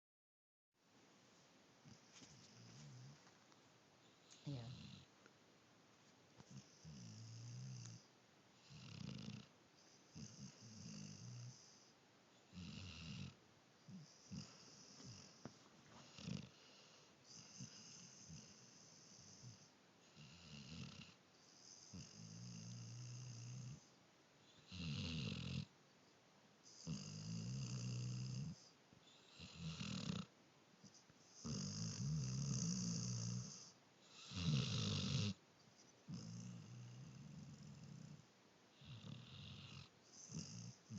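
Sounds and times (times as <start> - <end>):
faint snoring: 1.8 - 3.3, 4.1 - 5.1, 6.4 - 25.7, 26.6 - 35.4, 36.0 - 40.9
person snoring: 26.7 - 30.3, 31.4 - 35.4, 38.8 - 40.9.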